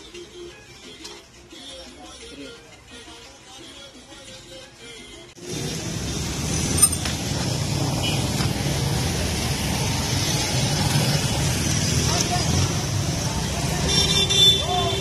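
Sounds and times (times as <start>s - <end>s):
passing traffic: 5.4s - 15.0s.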